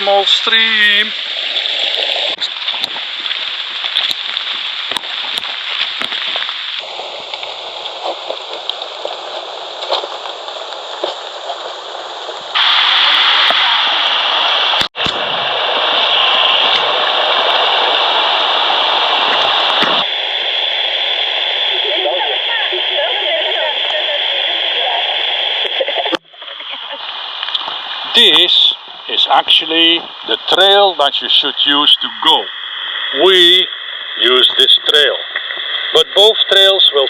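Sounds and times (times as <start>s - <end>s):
stream rushing over rocks: 0.0s - 31.1s.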